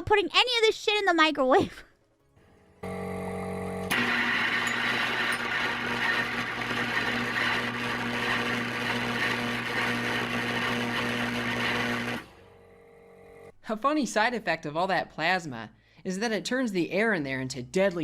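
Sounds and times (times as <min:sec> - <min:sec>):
microwave oven low hum: 0:02.8 - 0:13.5.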